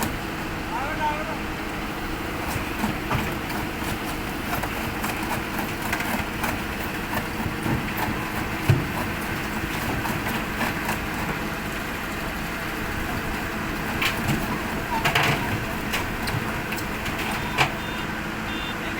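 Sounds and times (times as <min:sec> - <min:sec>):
excavator engine running: 0:00.0 - 0:18.9
metal clanks and knocks: 0:02.5 - 0:11.4, 0:13.8 - 0:18.0.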